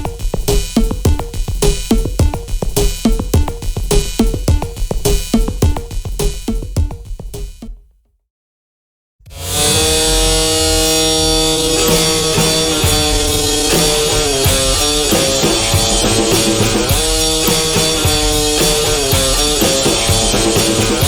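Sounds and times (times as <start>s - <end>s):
rock band music: 11.2s - 21.0s.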